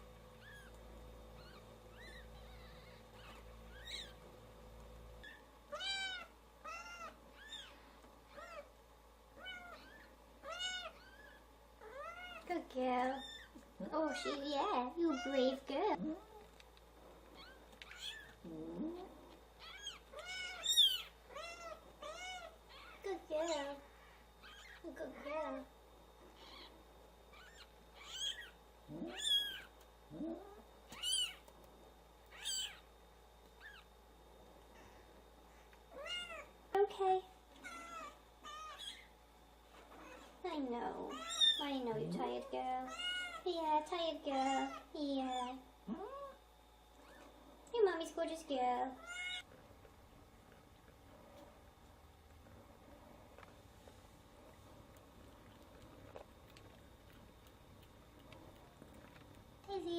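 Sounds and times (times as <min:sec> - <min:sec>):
kittens mewing: 0:01.4 - 0:04.2, 0:05.2 - 0:08.7, 0:09.4 - 0:12.5, 0:17.3 - 0:23.6, 0:24.4 - 0:25.6, 0:26.3 - 0:31.5, 0:32.3 - 0:32.9, 0:35.9 - 0:36.5, 0:37.5 - 0:39.2, 0:42.9 - 0:43.4, 0:49.0 - 0:49.5.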